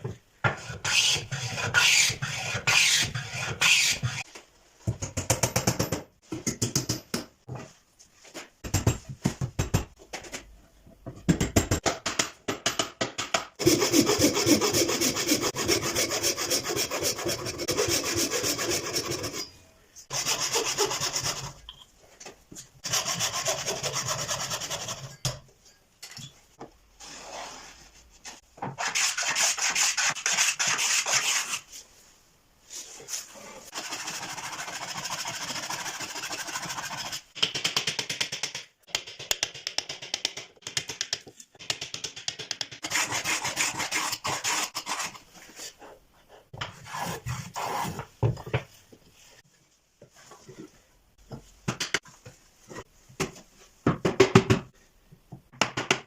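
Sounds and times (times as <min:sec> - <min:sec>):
hand tool scraping wood: 0:13.6 - 0:19.5.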